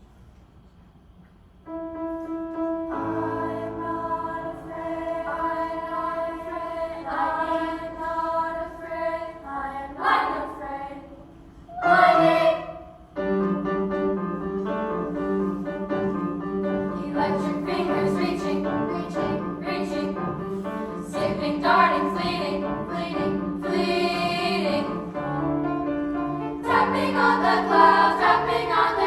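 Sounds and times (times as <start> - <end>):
choir singing sustained chords: 2.9 - 13.2, 16.8 - 29.0.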